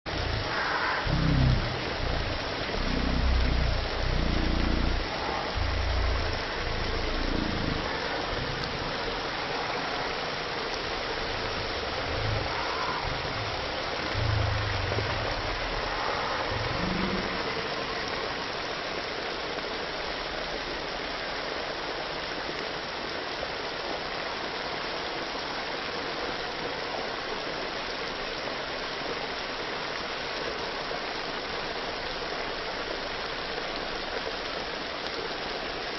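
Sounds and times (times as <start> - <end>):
low rumbles and bumps: 0.1 - 9.8, 10.9 - 17.8.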